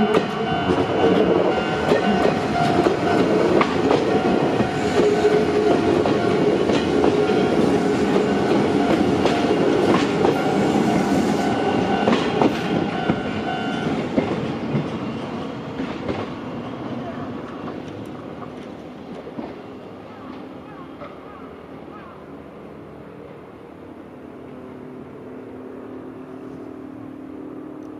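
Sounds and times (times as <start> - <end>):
electric train passing: 0.0 - 27.9
train wheels clacking over rail joints: 0.1 - 19.6.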